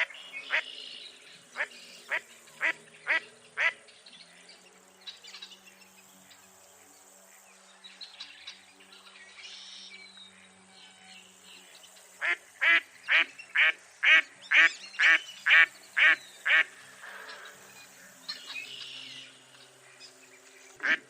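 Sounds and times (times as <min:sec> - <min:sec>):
duck quacking: 0:01.6 - 0:03.8, 0:20.8 - 0:21.0.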